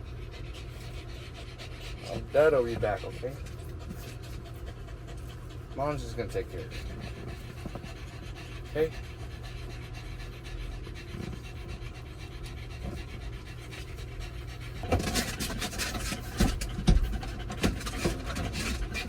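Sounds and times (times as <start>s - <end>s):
dog panting: 0.0s - 19.0s.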